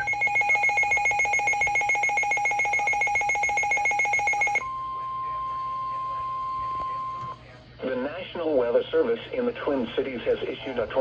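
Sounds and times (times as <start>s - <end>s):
pulsing electronic alarm tone: 0.0s - 7.2s
steady warning tone: 0.0s - 7.4s.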